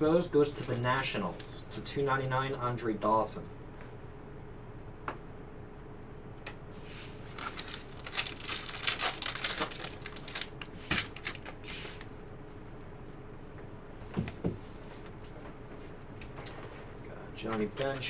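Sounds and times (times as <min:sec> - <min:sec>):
cards rustling and sliding: 0:06.8 - 0:12.1
wrapper crinkling and tearing: 0:07.2 - 0:12.1.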